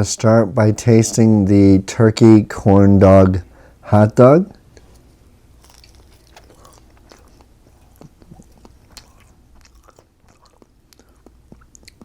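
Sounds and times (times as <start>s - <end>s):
person chewing food: 4.7s - 12.0s.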